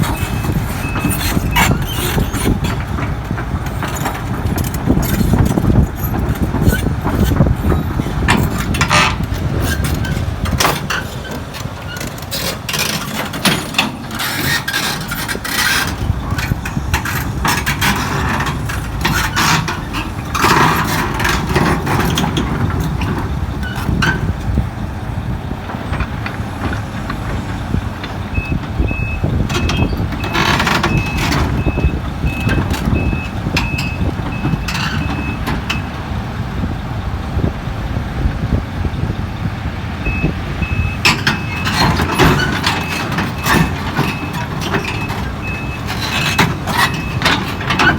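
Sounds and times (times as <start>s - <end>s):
metallic clanks and knocks: 0.0s - 24.6s, 40.7s - 47.9s
excavator engine under load: 0.0s - 47.9s
reversing alarm beeping: 28.3s - 35.9s, 40.0s - 47.9s.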